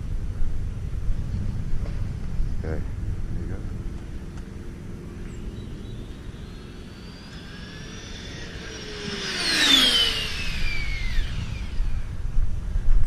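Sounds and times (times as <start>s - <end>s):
rc car electric motor whine: 5.5s - 12.8s.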